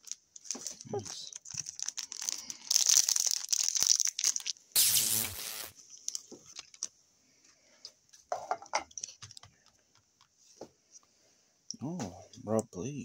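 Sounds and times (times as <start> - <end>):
cards ticking and rustling: 0.0 - 4.6, 6.0 - 6.9, 8.9 - 10.4
wrapper tearing: 0.0 - 6.9
wrapper crinkling: 0.0 - 7.0.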